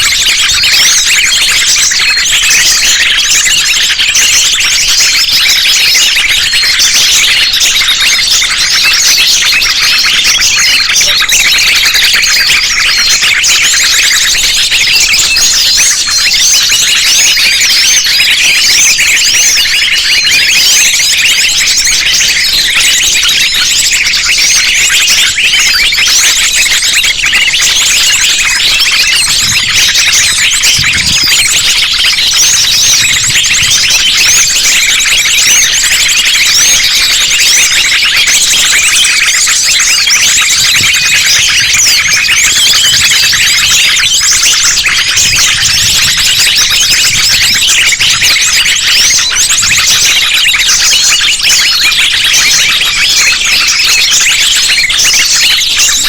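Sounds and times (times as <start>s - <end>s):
small birds chirping and twittering: 0.0s - 56.0s.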